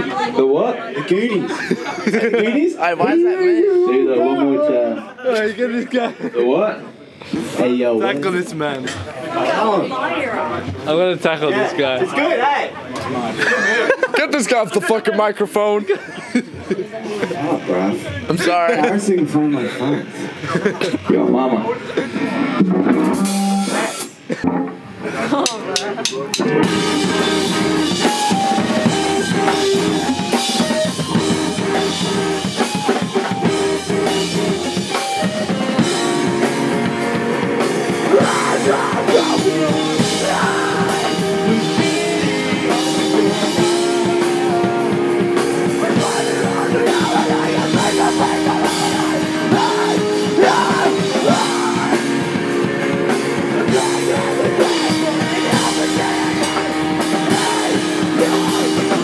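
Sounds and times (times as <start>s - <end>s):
live rock band playing: 21.8s - 59.0s
person singing: 37.7s - 59.0s.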